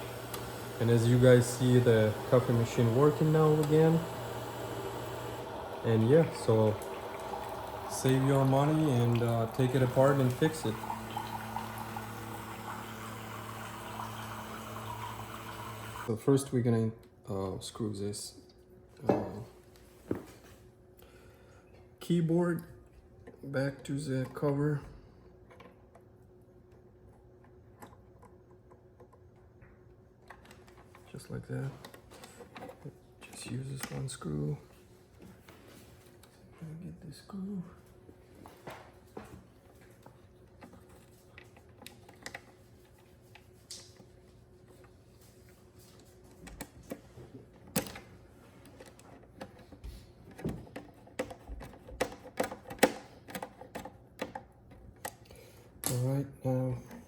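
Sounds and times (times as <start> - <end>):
plastic parts clicking and tapping: 48.6 - 56.0.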